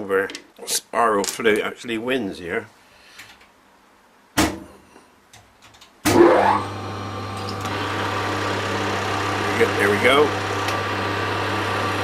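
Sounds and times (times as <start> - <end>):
power drill motor running: 6.2 - 12.0.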